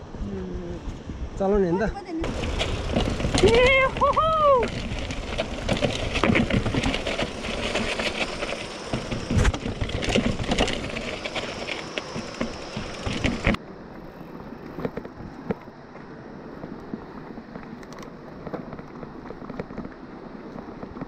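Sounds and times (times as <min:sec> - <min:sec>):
bike rattling and knocking: 0:02.2 - 0:13.6, 0:17.6 - 0:21.0
bike tyres on rocky trail: 0:02.2 - 0:21.0.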